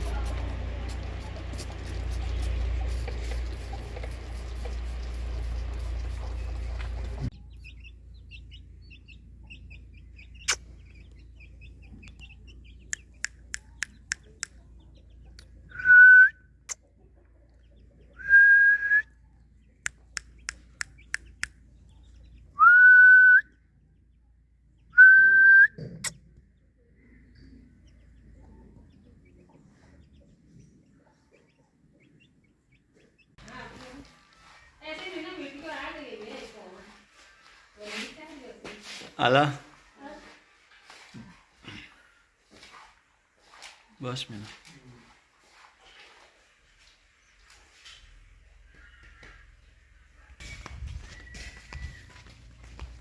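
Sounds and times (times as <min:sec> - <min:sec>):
loud one-note whistles: 0:22.6 - 0:23.5, 0:25.0 - 0:25.8.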